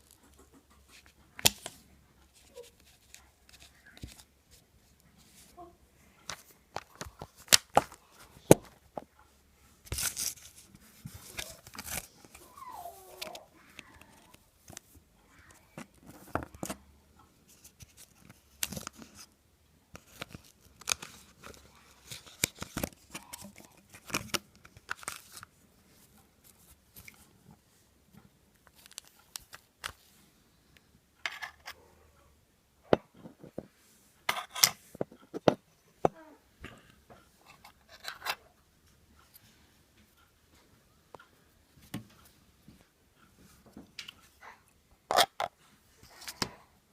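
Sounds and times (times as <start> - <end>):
clicks and scrapes of small parts: 9.8 - 12.4, 17.5 - 25.5, 28.6 - 30.0, 31.2 - 31.8, 33.2 - 35.6, 37.4 - 38.4, 45.1 - 46.5.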